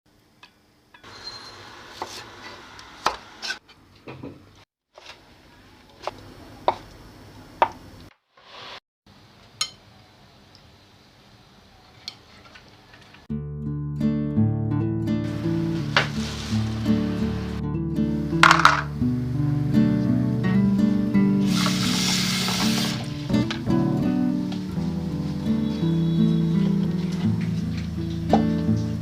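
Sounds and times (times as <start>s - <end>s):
guitar music: 13.3s - 29.0s.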